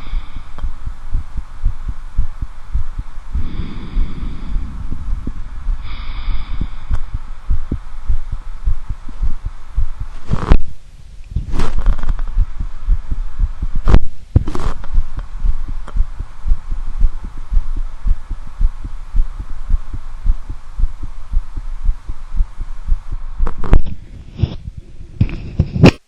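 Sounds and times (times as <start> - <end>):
heartbeat through stethoscope: 0.0 - 10.8, 11.4 - 26.0
rustling scrapes: 10.1 - 10.8, 11.4 - 12.4, 14.4 - 15.0.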